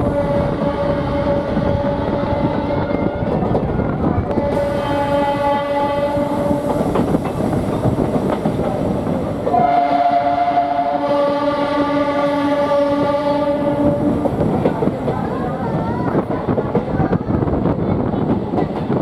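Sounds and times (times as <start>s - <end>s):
train horn blasts: 0.0s - 3.3s, 4.3s - 6.8s, 9.5s - 14.3s
train wheels clattering on rails: 0.0s - 9.6s, 12.1s - 19.0s.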